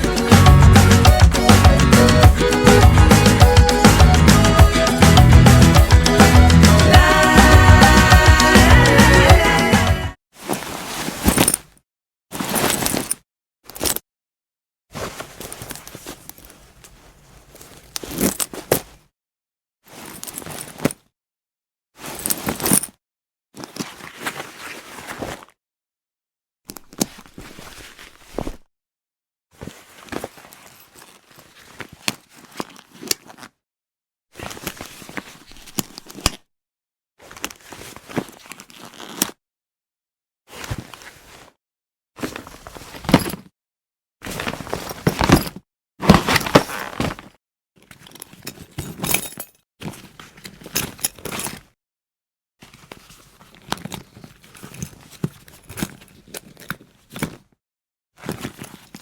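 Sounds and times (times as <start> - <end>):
bag zipping: 10.4 - 11.7, 12.3 - 13.2, 18.0 - 19.0, 38.6 - 39.4, 44.2 - 47.3
bag handling: 10.4 - 14.0, 14.9 - 19.1, 19.9 - 21.1, 22.0 - 23.0, 26.7 - 28.6, 29.9 - 33.5, 34.4 - 36.4, 37.2 - 39.4, 42.2 - 43.5, 44.2 - 47.4, 48.0 - 51.7, 52.7 - 57.6, 58.2 - 59.0
knocks and thuds on bag: 10.5 - 13.2, 42.2 - 43.5, 44.2 - 47.4.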